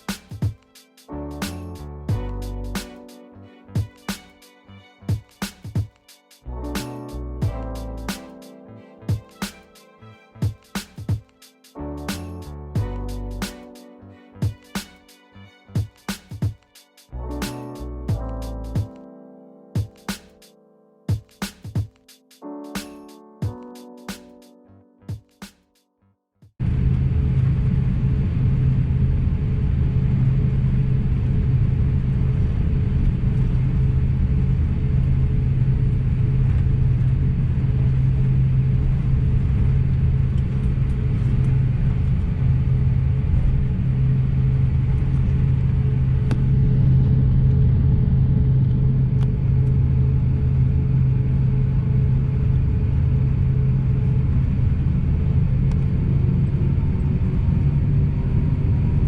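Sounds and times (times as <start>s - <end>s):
airplane cabin rumble: 26.6s - 59.0s
low engine hum: 26.6s - 59.0s.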